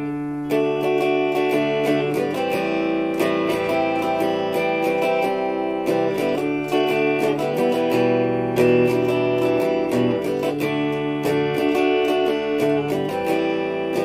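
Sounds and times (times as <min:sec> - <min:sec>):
clean electric guitar picking: 0:00.0 - 0:14.0.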